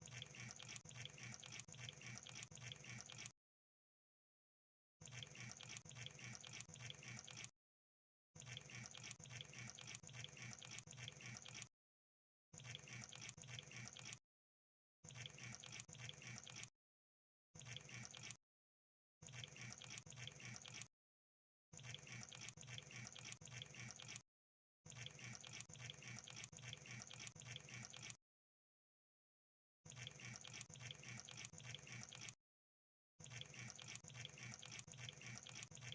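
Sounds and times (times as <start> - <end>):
wet clicking and bubbling crackle: 33.3 - 35.9.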